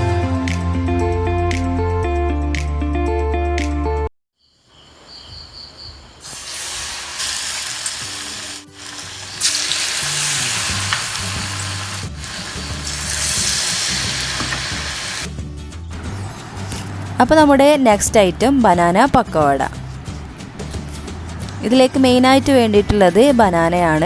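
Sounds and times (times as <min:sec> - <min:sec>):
food sizzling in hot oil: 0:06.2 - 0:15.3.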